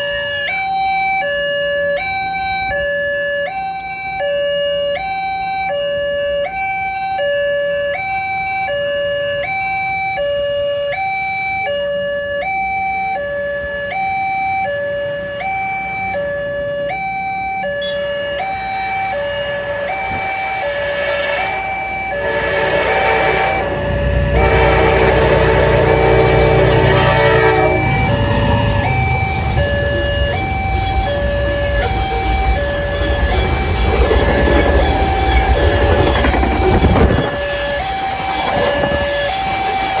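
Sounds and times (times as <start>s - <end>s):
two-tone warning alarm: 0.0s - 40.0s.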